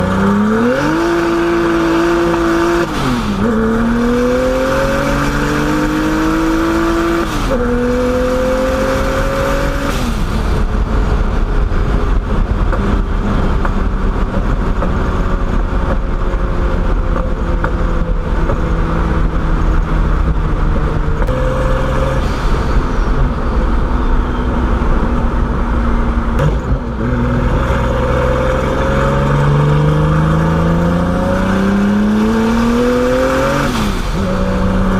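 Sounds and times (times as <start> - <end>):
car engine accelerating: 0.0 - 34.9
road rumble: 0.0 - 34.9.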